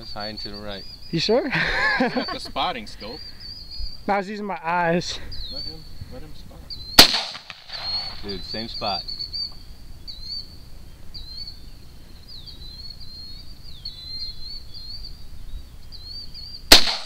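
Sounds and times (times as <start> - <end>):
small birds chirping: 0.0 - 17.0
rifle shot: 7.0 - 8.2, 16.7 - 17.0.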